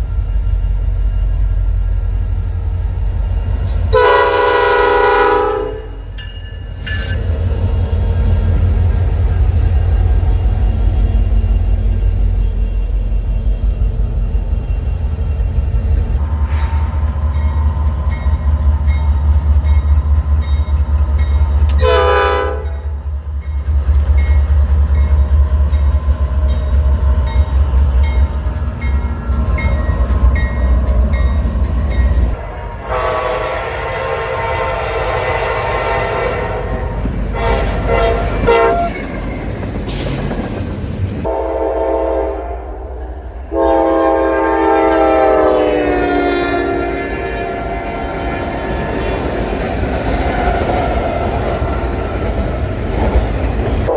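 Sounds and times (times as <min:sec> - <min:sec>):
train rumble: 0:00.0 - 0:53.9
locomotive air horn chords: 0:03.9 - 0:06.0, 0:21.7 - 0:23.0, 0:32.3 - 0:39.1, 0:41.2 - 0:49.0.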